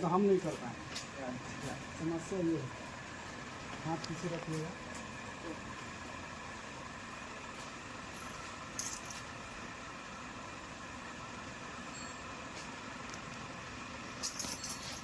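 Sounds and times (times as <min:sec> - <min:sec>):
steady background hum: 0:00.0 - 0:15.0
jangly rattle: 0:14.1 - 0:15.0.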